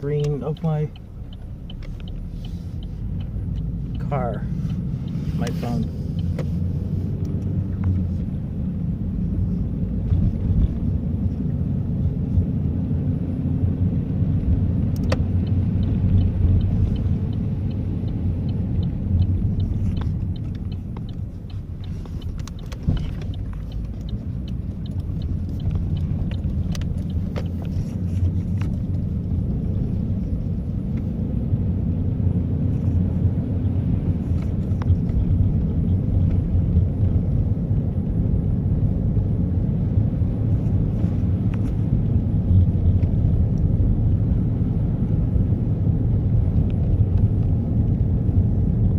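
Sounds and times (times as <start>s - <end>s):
scattered clicks: 0.0s - 6.4s, 14.8s - 29.5s
quick light ticks: 0.0s - 6.6s, 14.9s - 29.8s
car engine and tyres rumbling: 0.0s - 48.9s.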